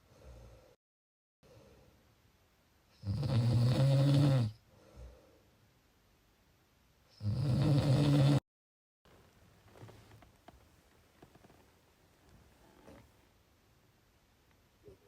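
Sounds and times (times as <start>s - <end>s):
faint breath: 0.0s - 0.8s, 1.4s - 2.1s, 4.6s - 5.6s
person snoring: 3.0s - 4.6s, 7.2s - 8.4s.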